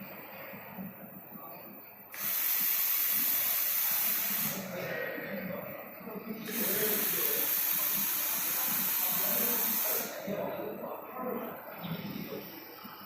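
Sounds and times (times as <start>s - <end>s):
welder hissing: 2.2s - 4.7s, 6.5s - 10.1s.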